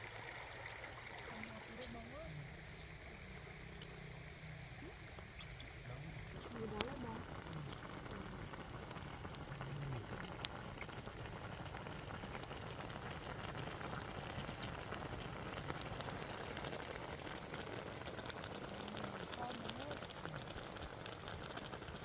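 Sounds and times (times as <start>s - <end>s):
pot bubbling: 0.0s - 22.0s
sharp pops and crackles: 4.6s - 22.0s.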